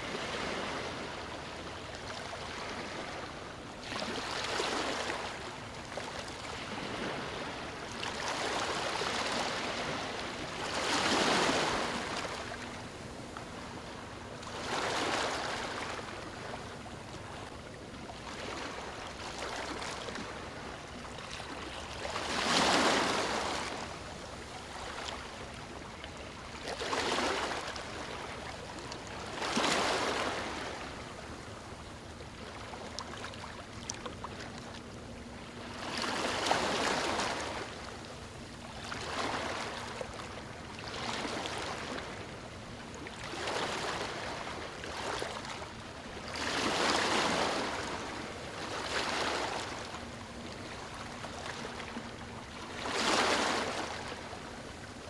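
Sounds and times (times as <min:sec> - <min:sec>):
ocean waves breaking on beach: 0:22.2 - 0:24.0.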